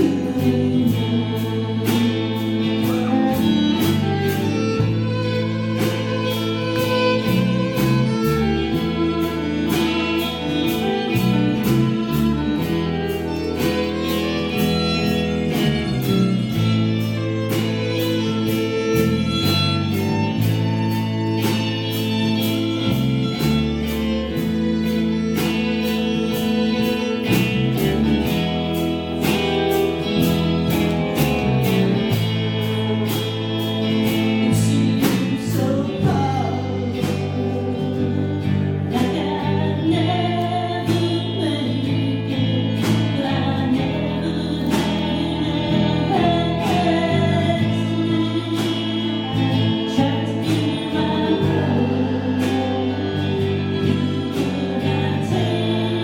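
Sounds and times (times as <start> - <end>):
steady drum beat: 0.0 - 40.1
band playing guitar and bass: 0.0 - 56.0
voices singing: 0.0 - 56.0.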